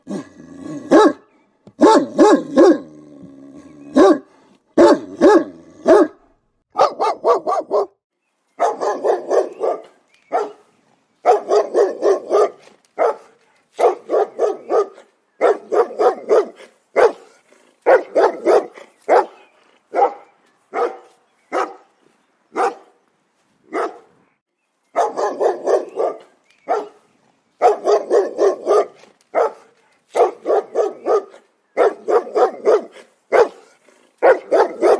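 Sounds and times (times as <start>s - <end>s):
dog barking: 0.9s - 1.2s, 1.8s - 2.9s, 3.9s - 6.2s, 6.8s - 8.0s, 8.6s - 10.6s, 11.3s - 21.8s, 22.6s - 22.9s, 23.7s - 24.1s, 25.0s - 27.0s, 27.6s - 34.9s.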